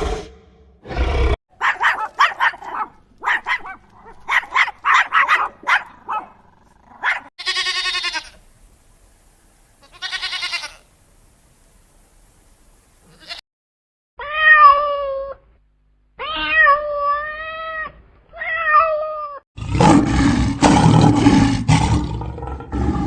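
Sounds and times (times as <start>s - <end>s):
roar-like burst: 0.0s - 1.4s, 19.6s - 23.0s
dog barking: 1.6s - 7.3s
wavering bleats: 9.8s - 10.9s.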